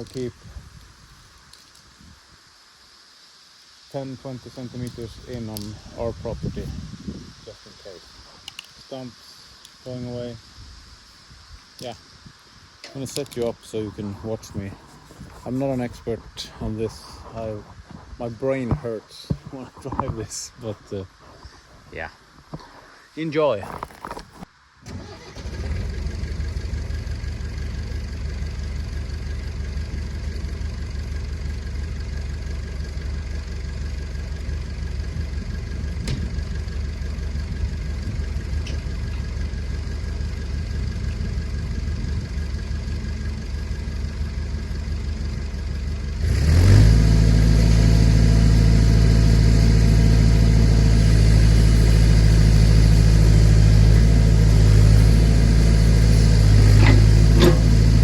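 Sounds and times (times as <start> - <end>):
backhoe engine revving: 24.9 - 31.8, 45.5 - 58.0.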